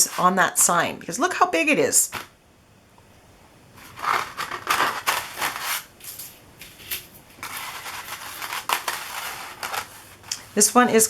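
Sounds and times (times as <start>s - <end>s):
plastic sheets rustling and crinkling: 0.0s - 0.6s, 2.0s - 2.4s, 3.7s - 11.0s.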